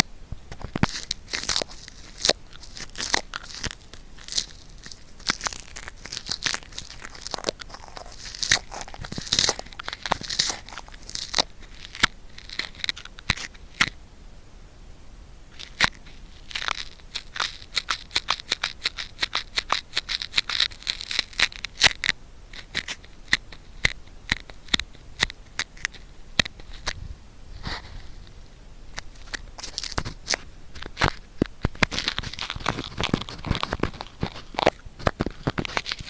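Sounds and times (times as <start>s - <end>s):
cotton swab crackling clicks: 0.5s - 14.0s
soft rubbing noise: 26.6s - 36.0s.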